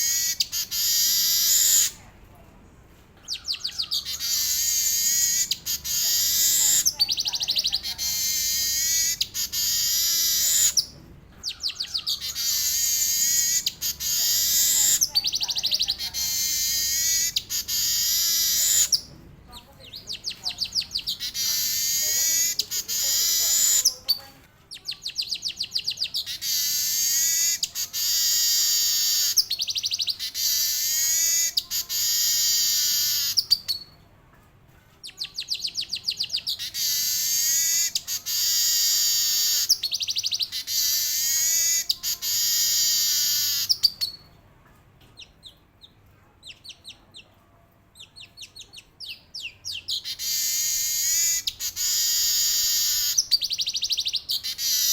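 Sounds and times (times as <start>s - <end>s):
weaver bird singing: 0.0s - 2.0s, 3.3s - 33.9s, 35.1s - 44.2s, 48.0s - 54.9s.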